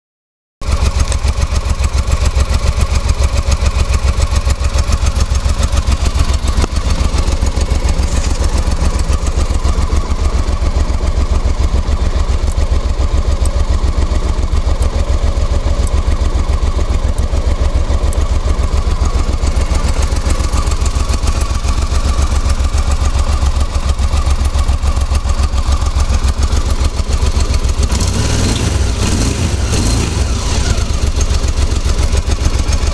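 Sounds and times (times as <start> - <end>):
motorcycle engine idling: 0.6 - 32.9
clutch noise: 0.7 - 32.9.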